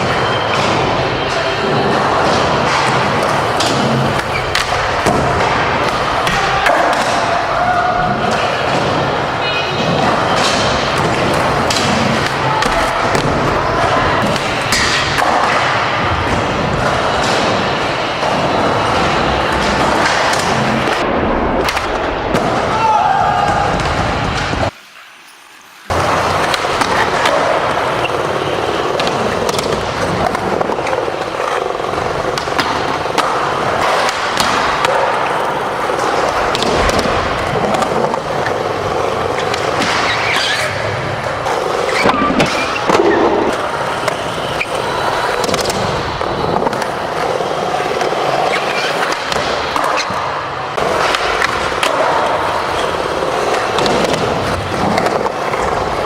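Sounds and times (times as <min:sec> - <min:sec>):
skateboard clacks: 0:00.0 - 0:24.8, 0:25.9 - 0:56.0
skateboard wheels rumbling: 0:00.0 - 0:24.8, 0:25.7 - 0:56.0.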